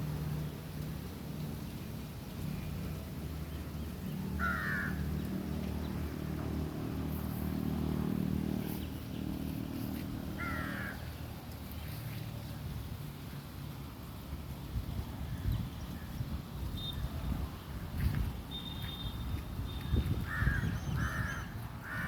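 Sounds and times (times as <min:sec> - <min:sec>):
low engine hum: 0:00.0 - 0:22.0
crow cawing: 0:04.4 - 0:05.0, 0:10.4 - 0:11.0, 0:20.3 - 0:22.0.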